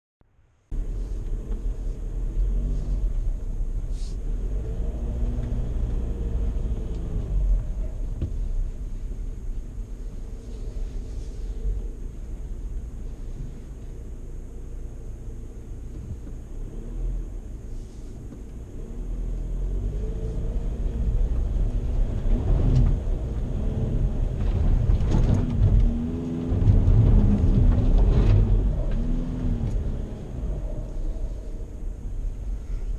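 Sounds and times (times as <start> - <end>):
diesel pickup engine rumble: 0.2 - 32.9
diesel engine pulling under load: 16.7 - 32.9.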